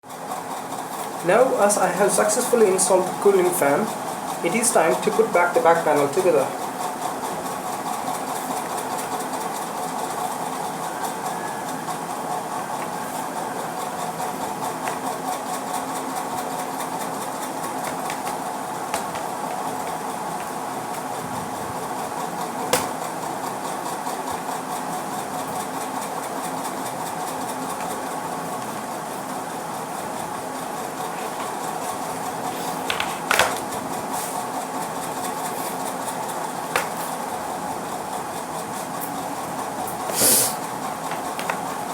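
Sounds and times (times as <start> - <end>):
steady mechanical hum: 0.0 - 41.9
plastic laptop parts clicking: 17.8 - 19.6.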